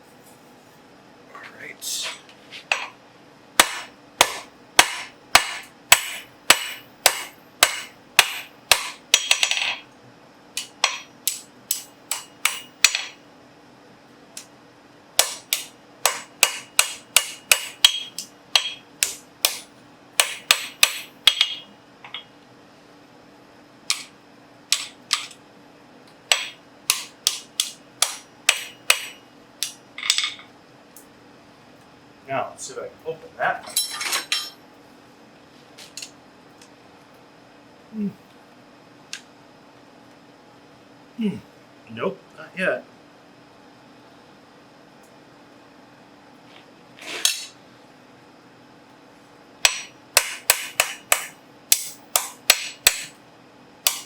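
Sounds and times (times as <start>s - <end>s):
hammer striking steel on anvil: 3.6s - 9.8s, 10.6s - 13.2s, 15.2s - 22.3s, 23.9s - 24.1s, 24.7s - 25.4s, 26.3s - 30.5s, 49.6s - 53.1s.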